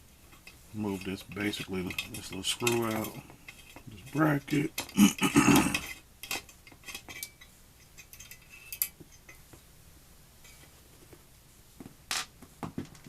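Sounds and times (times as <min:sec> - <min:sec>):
metal scrape: 0:00.3 - 0:04.7, 0:05.6 - 0:09.3
light metallic clicks and clinks: 0:00.3 - 0:05.0, 0:05.6 - 0:09.5.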